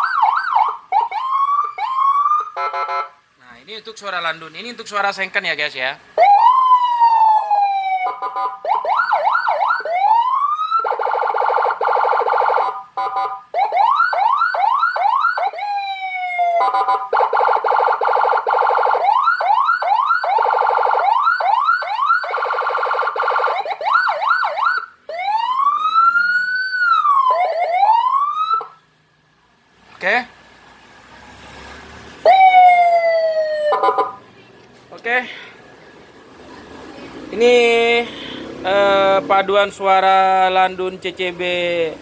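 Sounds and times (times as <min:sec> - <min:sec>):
police siren whoops: 0:00.0 - 0:02.7, 0:06.2 - 0:28.8, 0:32.2 - 0:34.2
siren wail: 0:00.0 - 0:03.1, 0:06.2 - 0:28.8, 0:32.2 - 0:34.2.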